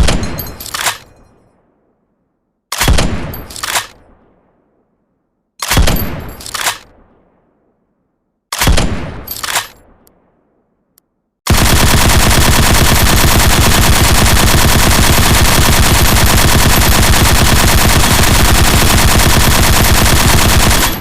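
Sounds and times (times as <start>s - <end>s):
machine gun burst: 11.5s - 21.0s.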